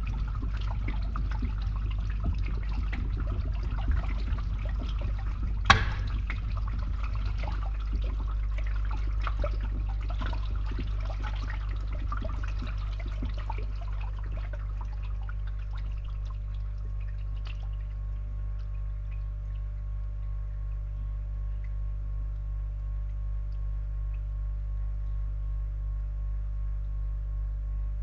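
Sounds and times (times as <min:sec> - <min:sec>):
sharp drip: 0:00.0 - 0:20.9
water trickling in pipe: 0:00.0 - 0:27.4
pump humming: 0:00.0 - 0:28.0.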